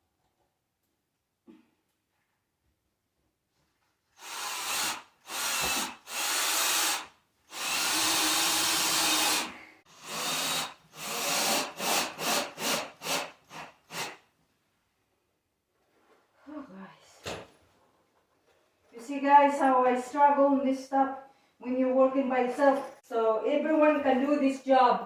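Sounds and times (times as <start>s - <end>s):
power drill bursts: 4.2s - 14.2s.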